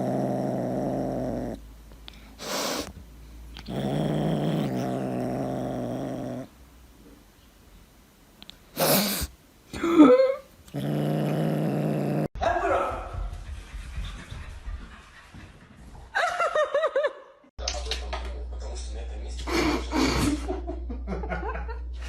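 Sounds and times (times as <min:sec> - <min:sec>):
pet growling: 0:00.0 - 0:02.9, 0:03.5 - 0:06.6, 0:10.6 - 0:12.4.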